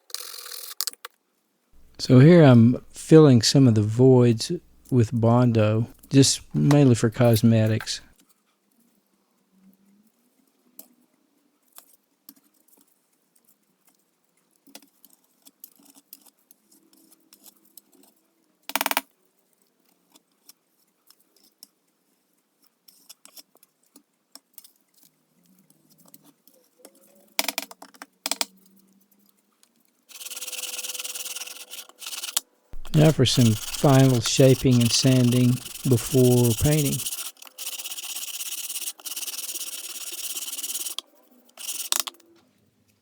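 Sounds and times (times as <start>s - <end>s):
whirring hiss with held tone: 1.8s - 3.6s, 30.2s - 41.0s
scrapes taps and clicks: 5.8s - 8.0s, 30.1s - 42.2s.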